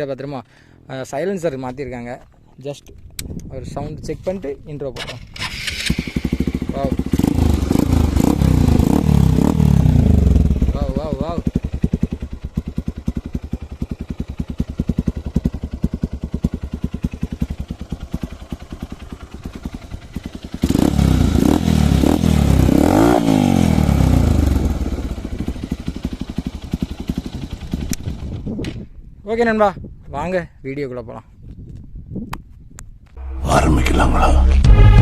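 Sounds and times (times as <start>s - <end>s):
motorcycle engine idling and revving: 5.0s - 29.0s.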